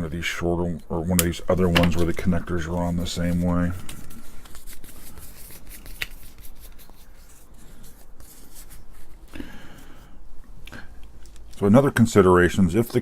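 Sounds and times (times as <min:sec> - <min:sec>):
cables rustling: 0:00.8 - 0:09.5.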